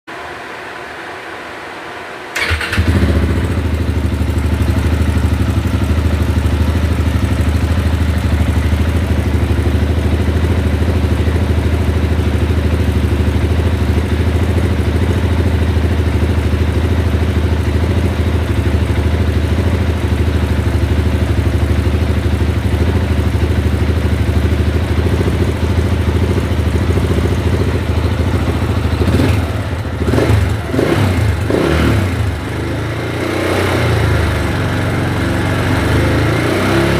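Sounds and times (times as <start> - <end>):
motorcycle throttle blips: 2.3 - 4.7, 24.9 - 32.7
motorcycle engine idling: 2.4 - 36.9.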